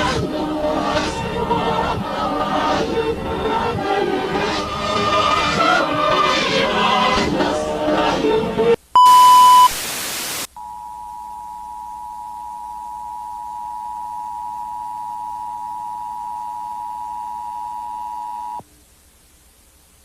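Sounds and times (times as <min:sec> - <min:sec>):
two-tone attention signal: 0:09.0 - 0:09.7
short high beep: 0:09.0 - 0:09.8
burst of static: 0:09.0 - 0:10.5.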